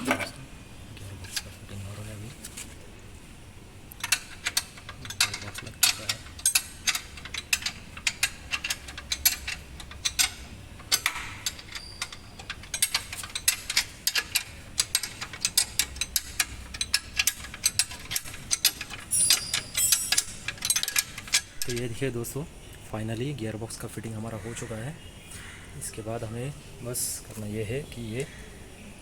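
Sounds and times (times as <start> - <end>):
ratchet wrench clicking: 4.0 - 22.0.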